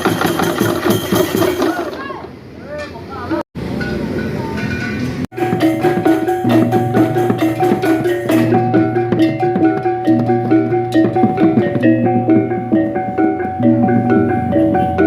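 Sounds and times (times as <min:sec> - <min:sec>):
bamboo slit drums struck: 0:05.4 - 0:14.4.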